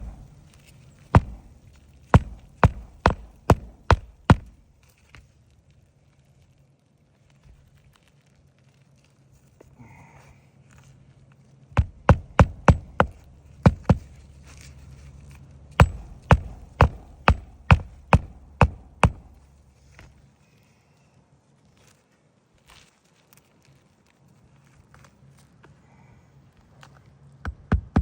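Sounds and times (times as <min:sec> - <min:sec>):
hammer striking roofing nails: 0:00.0 - 0:00.5, 0:01.1 - 0:04.7, 0:11.8 - 0:14.2, 0:15.8 - 0:19.5, 0:27.5 - 0:28.0
soft scraping or rustling: 0:04.8 - 0:11.7, 0:14.1 - 0:15.7, 0:19.5 - 0:27.2.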